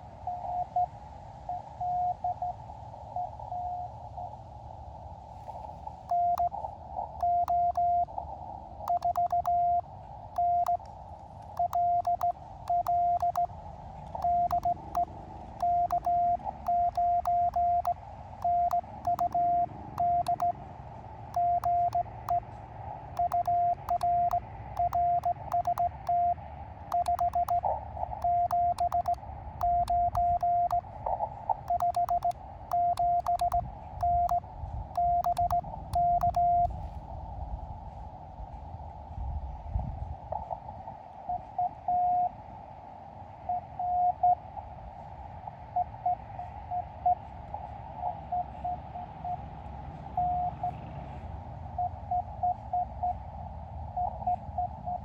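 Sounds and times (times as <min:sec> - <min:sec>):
morse code beeps: 0:06.1 - 0:06.6, 0:07.2 - 0:08.1, 0:08.9 - 0:09.8, 0:10.4 - 0:10.8, 0:11.5 - 0:13.5, 0:14.1 - 0:20.6, 0:21.4 - 0:22.4, 0:23.2 - 0:27.6, 0:28.2 - 0:30.8, 0:31.6 - 0:34.4, 0:35.0 - 0:36.8.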